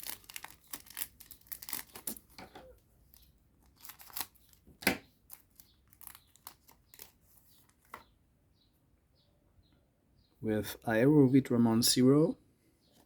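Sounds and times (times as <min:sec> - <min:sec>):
foil wrapper tearing and crinkling: 0:00.0 - 0:02.4, 0:03.1 - 0:07.8.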